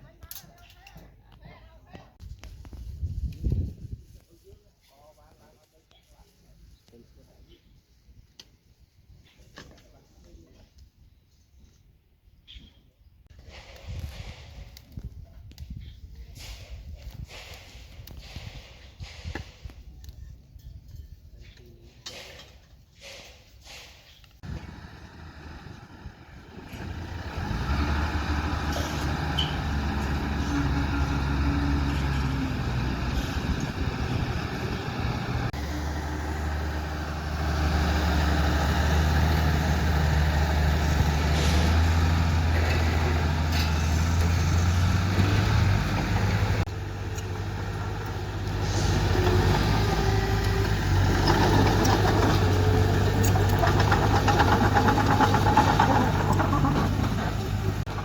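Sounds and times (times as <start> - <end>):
heavy machinery diesel engine: 24.4 - 58.0.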